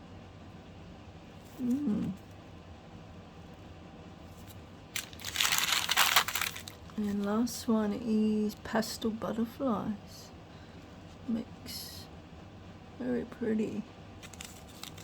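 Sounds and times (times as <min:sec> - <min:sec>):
packaging crinkling: 0:04.4 - 0:07.3, 0:14.2 - 0:15.0.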